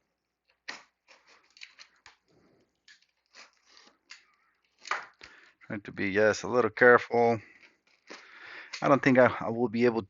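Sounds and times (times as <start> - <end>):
packing tape and cardboard tearing: 2.9 - 5.1.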